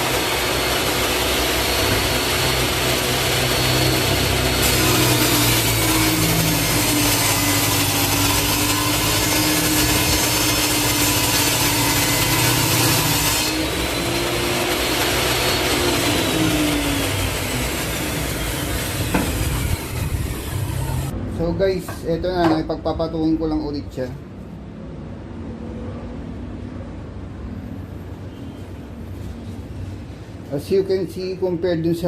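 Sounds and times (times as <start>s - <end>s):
saw winding down: 0.0s - 21.1s
table saw cutting board: 0.0s - 21.2s.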